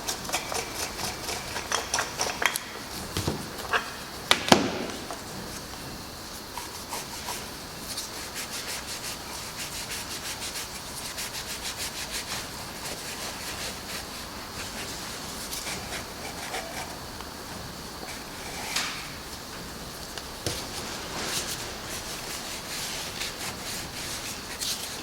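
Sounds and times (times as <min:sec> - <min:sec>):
sandpaper sanding wood: 0:06.6 - 0:17.1, 0:20.6 - 0:25.0.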